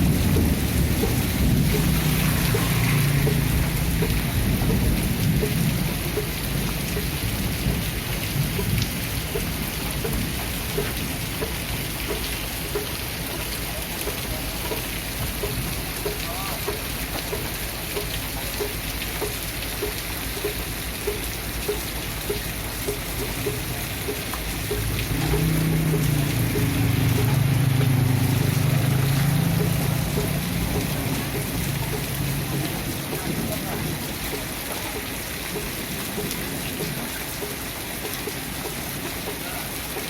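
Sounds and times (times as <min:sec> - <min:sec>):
thunder rumble: 0:00.0 - 0:10.7
steady rain: 0:00.0 - 0:40.0
faint regular ticking: 0:00.4 - 0:40.0.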